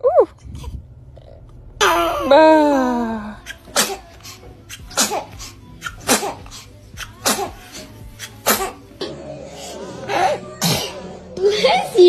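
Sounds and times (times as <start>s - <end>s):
child sneezing: 3.4s - 4.1s, 4.7s - 8.8s, 10.6s - 11.1s.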